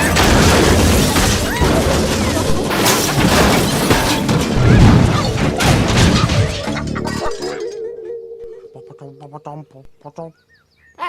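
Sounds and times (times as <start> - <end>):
crashing and booming impacts: 0.0 - 7.8.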